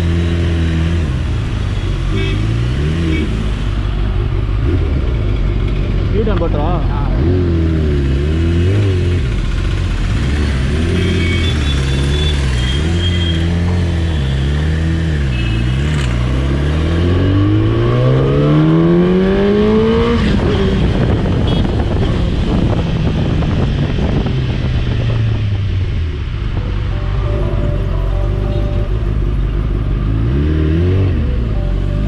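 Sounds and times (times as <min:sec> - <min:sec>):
motorcycle engine revving: 0:00.0 - 0:26.7, 0:28.5 - 0:31.8
road noise: 0:00.0 - 0:32.0
wind rushing over microphone: 0:19.9 - 0:27.7.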